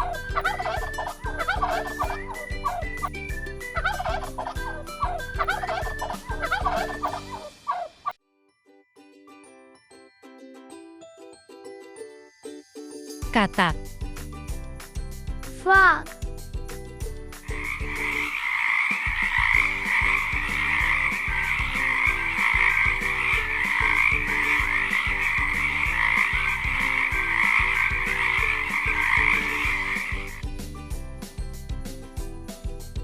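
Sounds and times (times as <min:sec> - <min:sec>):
background music with steady beat: 0:00.0 - 0:07.9, 0:13.1 - 0:33.0
frogs croaking: 0:00.4 - 0:02.5, 0:05.1 - 0:08.2, 0:17.4 - 0:30.4.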